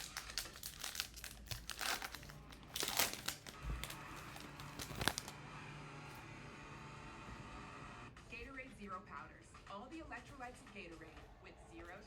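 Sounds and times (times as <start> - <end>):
foil wrappers crinkling and tearing: 0.0 - 5.4.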